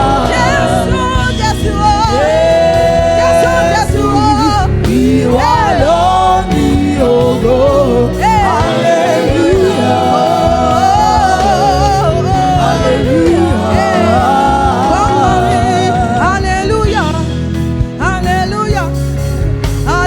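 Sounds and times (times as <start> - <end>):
full band with steady bass: 0.0 - 20.0.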